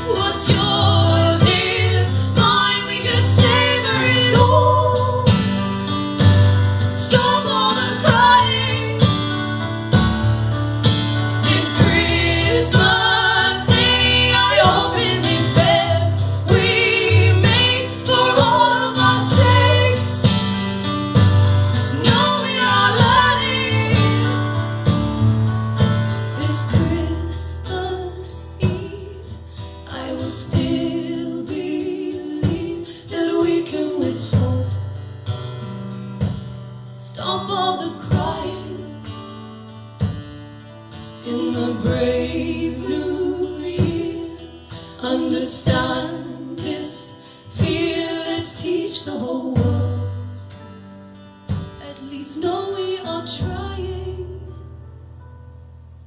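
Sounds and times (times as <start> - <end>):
woman singing: 0.0 - 5.8, 6.9 - 9.6, 11.4 - 20.5, 21.8 - 24.5, 26.4 - 35.0, 37.0 - 39.2, 41.1 - 50.4, 51.6 - 54.6
acoustic guitar strumming: 0.0 - 54.0.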